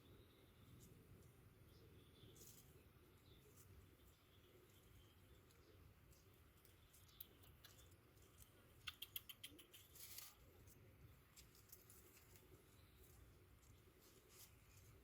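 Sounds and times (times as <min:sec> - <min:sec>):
soft rustle: 0:00.6 - 0:08.8, 0:09.7 - 0:15.0
faint clicks: 0:06.6 - 0:10.3.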